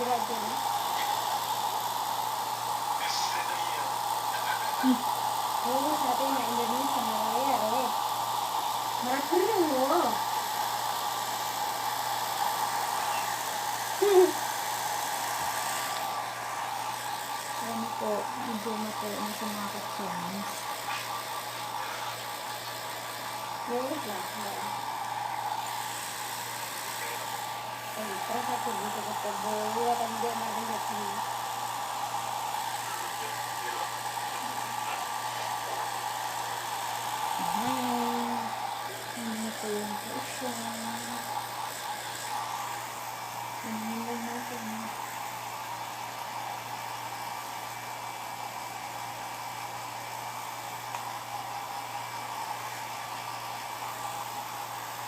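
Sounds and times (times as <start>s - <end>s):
hair dryer blowing: 0.0s - 55.0s
person humming: 14.0s - 14.4s, 37.4s - 38.5s.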